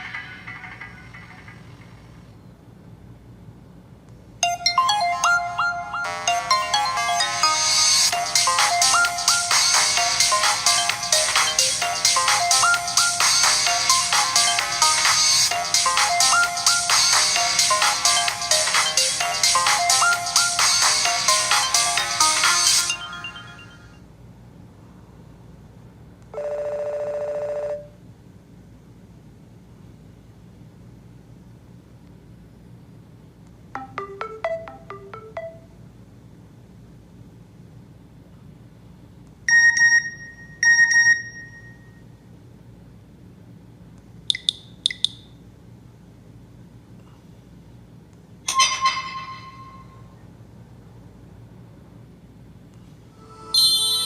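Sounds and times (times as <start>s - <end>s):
phone ringtone melody: 4.4s - 24.0s, 33.8s - 35.8s
phone alert beeps: 44.3s - 45.2s
short high chirps: 53.3s - 54.0s.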